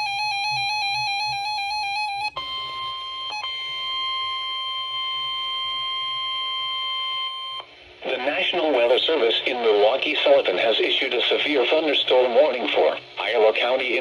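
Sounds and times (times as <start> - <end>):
steady warning alarm tone: 0.0 - 7.6.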